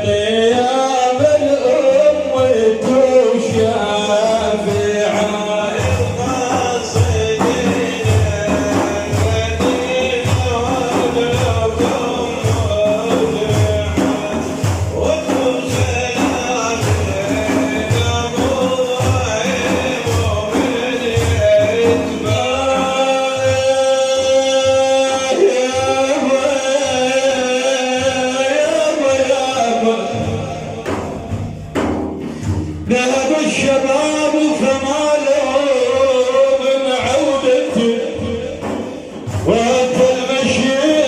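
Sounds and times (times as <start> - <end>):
frame drums beating: 0.0 - 41.0
men singing devotional song: 0.0 - 41.0.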